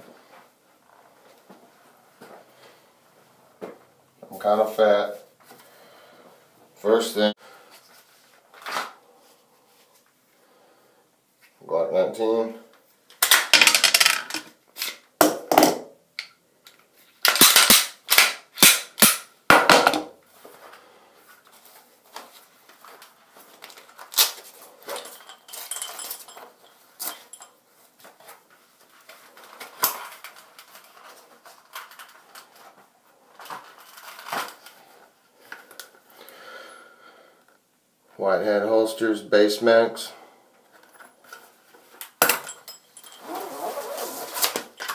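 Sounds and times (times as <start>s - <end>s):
rustling: 40.6s - 44.9s.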